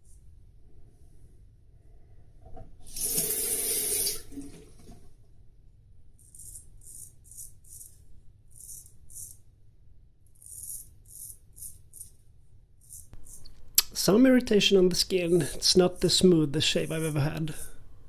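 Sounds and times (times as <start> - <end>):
bathroom tap running: 2.9 - 4.4, 13.2 - 18.0.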